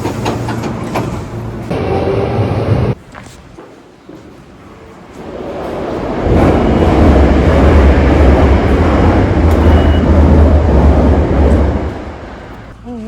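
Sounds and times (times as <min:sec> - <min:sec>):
train rumbling close by: 0:04.2 - 0:13.0.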